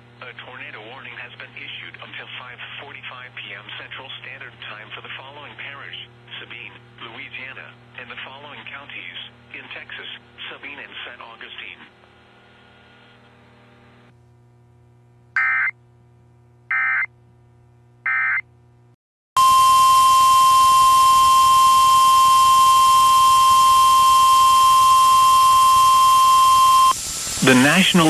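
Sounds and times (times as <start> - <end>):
steady single-pitch alarm tone: 15.4 - 15.7, 16.7 - 17.1, 19.4 - 27.8
hiss: 26.4 - 28.0.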